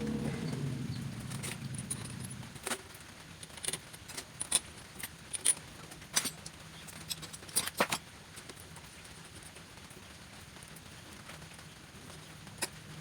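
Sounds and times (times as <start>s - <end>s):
metal parts and tools clinking: 0.0s - 2.8s.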